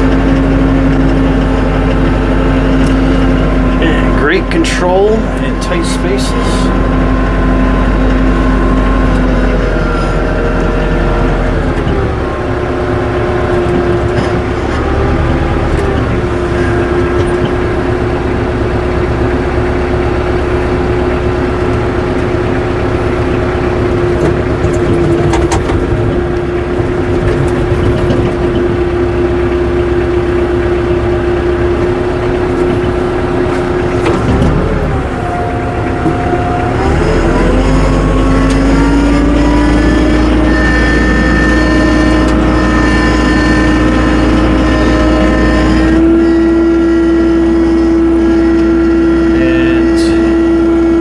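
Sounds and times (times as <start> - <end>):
tractor engine whining: 0.0 - 51.0.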